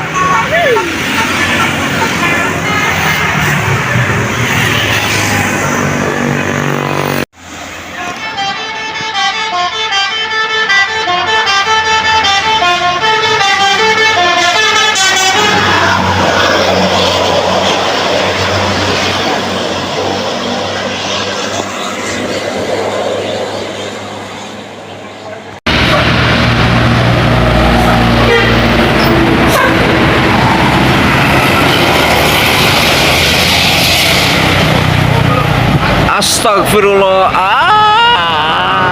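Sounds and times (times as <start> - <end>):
bus engine and road noise: 0.0 - 38.9
multi-tone air horn tune: 7.9 - 16.0, 28.2 - 29.9.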